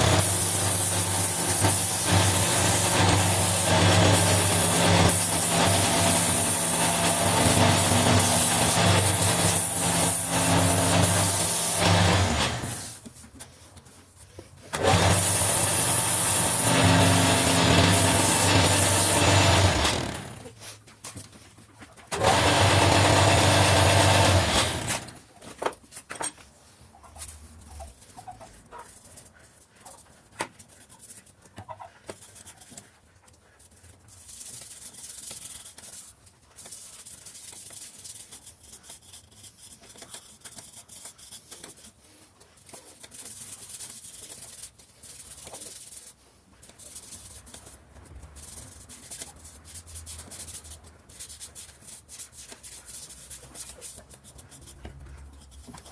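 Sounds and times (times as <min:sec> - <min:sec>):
lathe motor hum: 0:00.0 - 0:12.8, 0:14.8 - 0:20.4, 0:22.2 - 0:25.1
tool rubbing on spinning wood: 0:00.0 - 0:13.1, 0:14.8 - 0:20.6, 0:22.2 - 0:25.1, 0:48.4 - 0:55.9.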